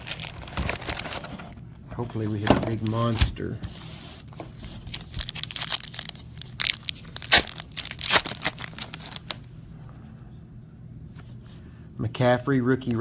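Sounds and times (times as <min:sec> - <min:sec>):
wrapper tearing and crinkling: 0:00.0 - 0:01.4, 0:04.8 - 0:09.4.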